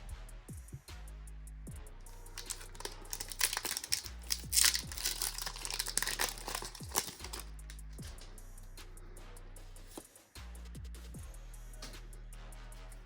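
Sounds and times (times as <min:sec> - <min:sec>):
foil wrapper crinkling: 0:02.4 - 0:07.9.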